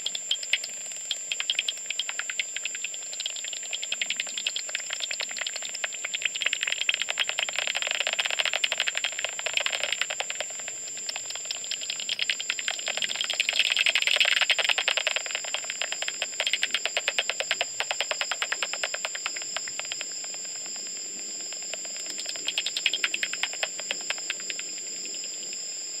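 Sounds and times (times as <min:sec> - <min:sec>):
bat echolocation clicks: 0:00.0 - 0:25.6
steady high whine: 0:14.8 - 0:26.0.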